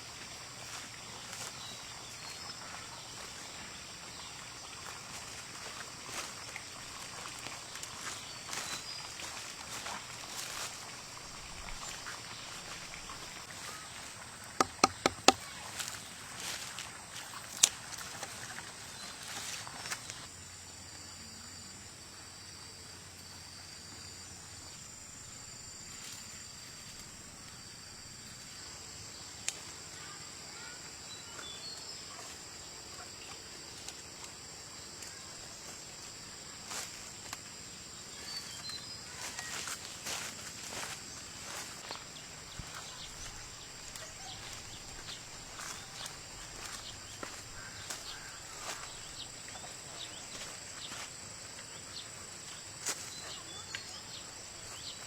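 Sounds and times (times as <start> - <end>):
insects singing: 0.0 - 17.9, 24.0 - 55.0
sharp clicks or knocks: 14.6 - 15.4.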